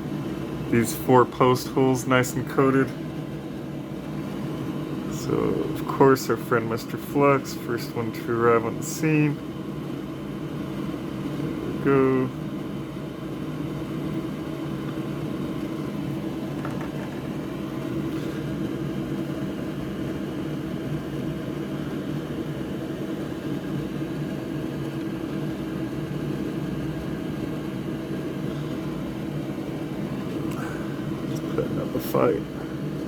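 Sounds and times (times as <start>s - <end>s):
fan whirring with low hum: 0.0s - 33.0s.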